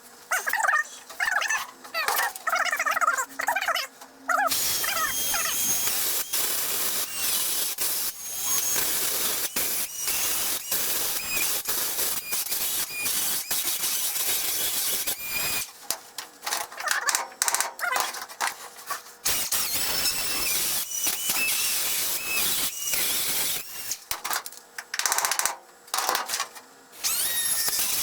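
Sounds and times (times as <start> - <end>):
power tool cutting sheet metal: 4.5 - 15.7, 19.2 - 24.0, 27.0 - 28.0.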